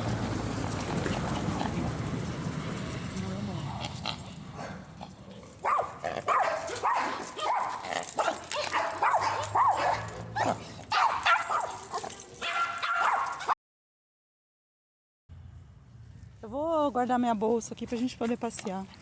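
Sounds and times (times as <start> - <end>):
dog whining and yipping: 5.7 - 13.6.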